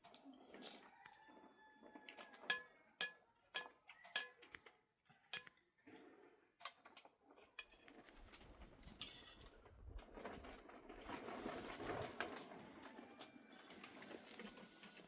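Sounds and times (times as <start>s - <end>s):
dishes clinking: 2.4s - 4.6s.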